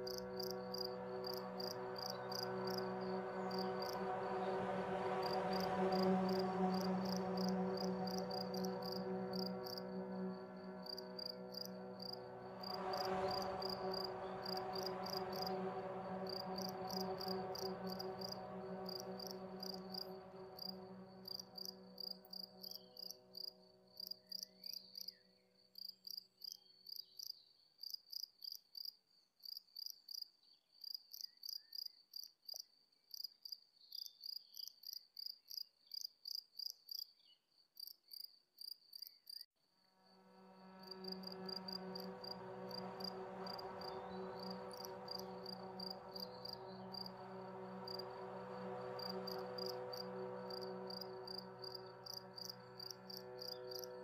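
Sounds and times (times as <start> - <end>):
crickets chirping: 0.0 - 25.2, 40.1 - 54.0
low drone with overtones: 0.0 - 25.5, 40.1 - 54.0.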